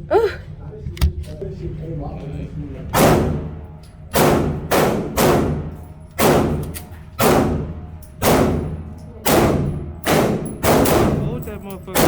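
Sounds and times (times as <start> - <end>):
gunshots echoing indoors: 2.9 - 12.0.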